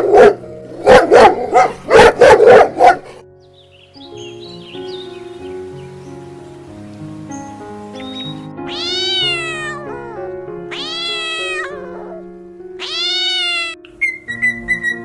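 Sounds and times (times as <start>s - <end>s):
soft background music: 0.0s - 15.0s
high chirps and clicks: 7.4s - 8.7s
cat meowing: 8.7s - 12.2s, 12.8s - 13.9s.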